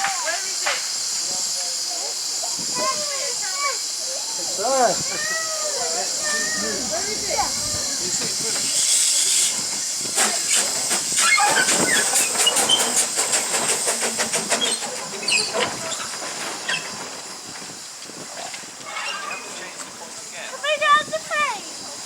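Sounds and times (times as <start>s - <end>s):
locomotive steam hiss: 0.0s - 22.0s
locomotive chuffing beats: 4.6s - 17.9s.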